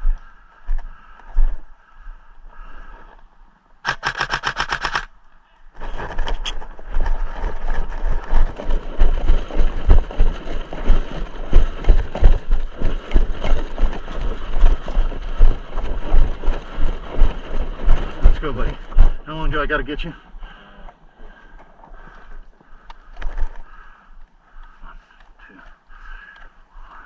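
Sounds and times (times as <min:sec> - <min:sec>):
airsoft gun firing burst: 0:03.8 - 0:05.1
loud continuous rustling: 0:03.8 - 0:05.1, 0:05.7 - 0:20.0.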